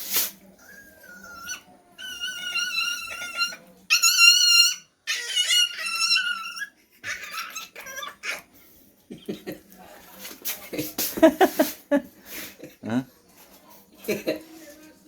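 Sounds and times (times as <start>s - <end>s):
puppy whining: 0.6s - 8.5s.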